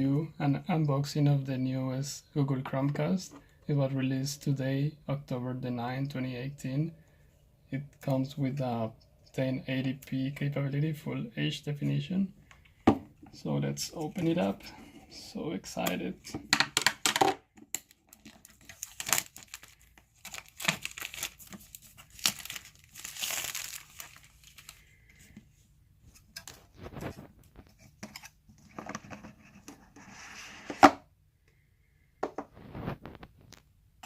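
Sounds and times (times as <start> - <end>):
packaging crinkling: 17.8 - 25.2
cardboard seal tearing: 17.9 - 24.8.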